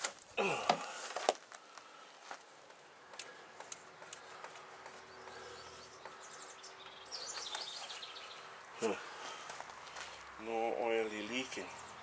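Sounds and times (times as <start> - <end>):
hand tools clicking and tapping: 2.7 - 5.4.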